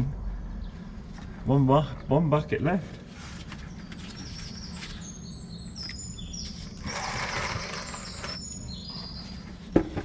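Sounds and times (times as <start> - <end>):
bird singing: 3.5 - 10.0.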